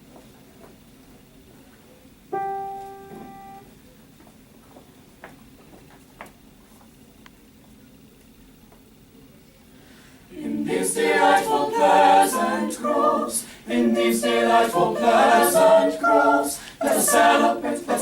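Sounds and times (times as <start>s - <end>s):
piano note ringing: 2.3s - 3.8s
faint clicks and shuffles: 3.7s - 9.8s.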